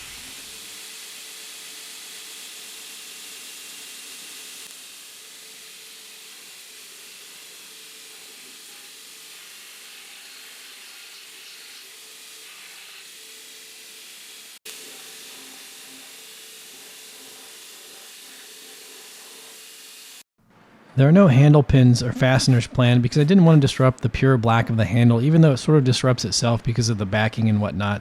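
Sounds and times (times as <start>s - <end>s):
belt sander hissing: 0.0s - 20.3s.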